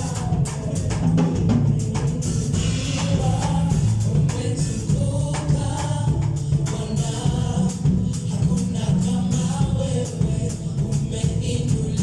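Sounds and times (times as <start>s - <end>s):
bass line: 0.0s - 12.0s
drum beat: 0.0s - 12.0s
gospel choir singing: 0.0s - 12.0s.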